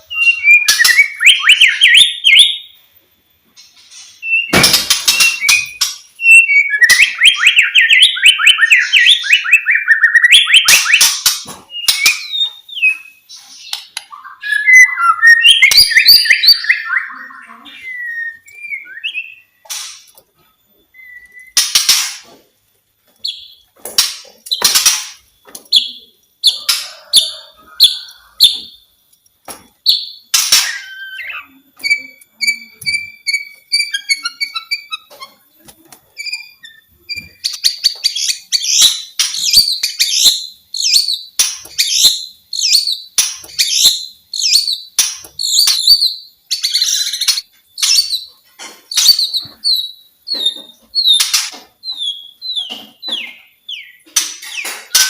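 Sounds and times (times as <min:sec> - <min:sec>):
bird singing whistled phrases: 0:00.1 - 0:02.6, 0:05.2 - 0:11.0, 0:14.1 - 0:19.5, 0:20.9 - 0:21.6, 0:30.0 - 0:34.9.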